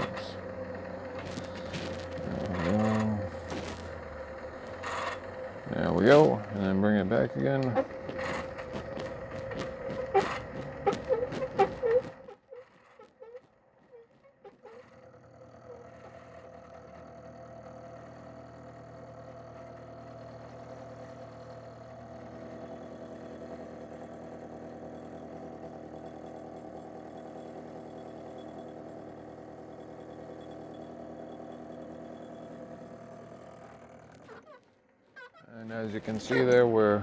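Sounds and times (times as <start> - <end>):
milling machine hum: 0.0 - 13.4.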